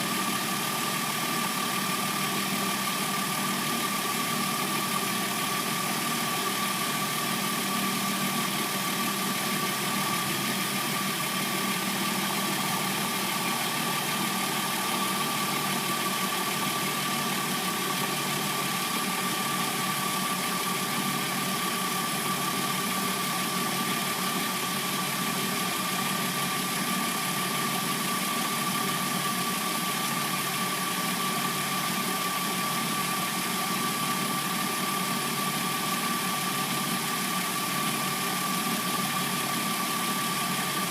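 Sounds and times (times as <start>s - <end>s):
car engine idling: 0.0s - 40.9s
engine whine: 9.4s - 22.8s.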